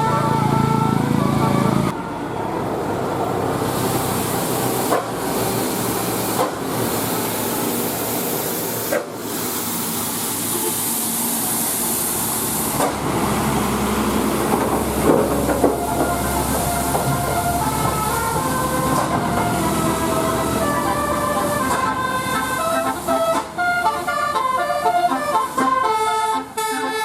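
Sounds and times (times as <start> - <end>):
multi-tone bus horn: 0.0 - 3.1, 10.3 - 11.1, 11.7 - 27.0
bus and traffic noise: 0.0 - 27.0.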